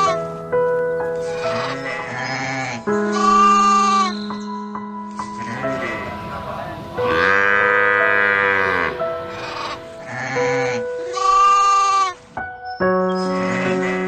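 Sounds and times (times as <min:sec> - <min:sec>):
background music with held notes: 0:00.0 - 0:14.0
farm animal bleating: 0:01.2 - 0:04.2, 0:07.0 - 0:12.2, 0:13.3 - 0:14.0.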